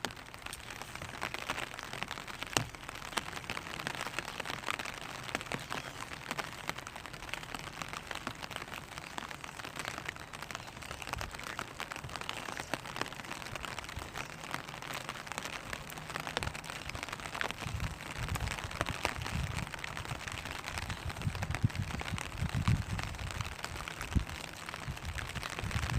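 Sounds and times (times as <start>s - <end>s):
rain pattering on plastic umbrella: 0.0s - 25.9s.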